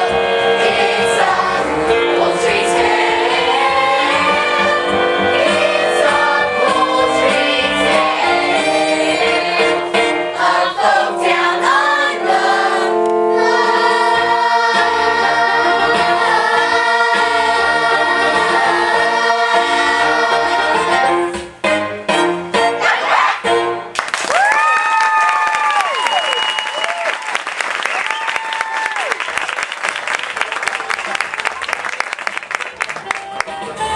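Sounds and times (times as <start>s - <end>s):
cast singing in unison: 0.0s - 21.3s
musical accompaniment: 0.0s - 24.2s, 30.7s - 33.9s.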